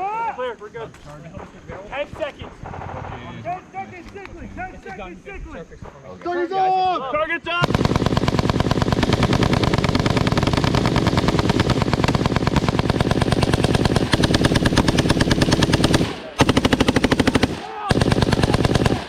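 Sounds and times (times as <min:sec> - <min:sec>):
machine gun bursts: 0:07.6 - 0:19.0.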